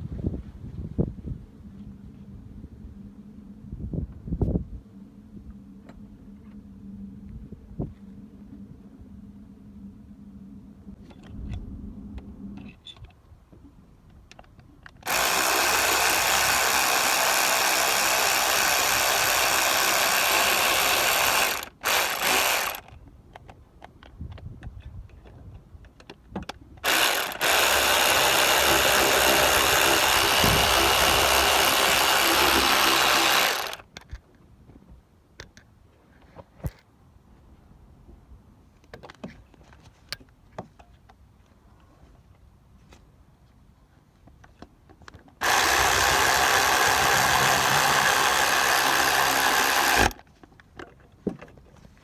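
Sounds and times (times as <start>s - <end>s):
power tool running: 15.0s - 22.9s, 26.8s - 33.8s, 45.4s - 50.2s
hand tools clicking: 45.4s - 50.2s.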